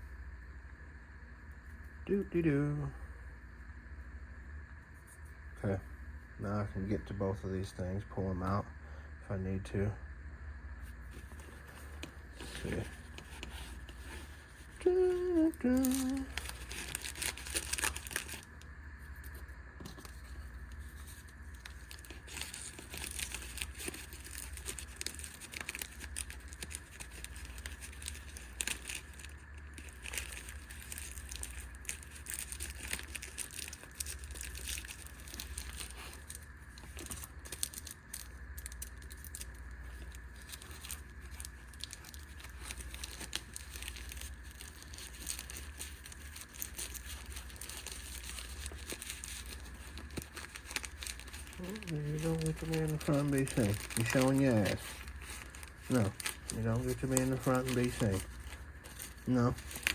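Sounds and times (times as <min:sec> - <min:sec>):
steady low hum: 0:00.0 - 0:59.9
gear rustling and crinkling: 0:10.8 - 0:59.9.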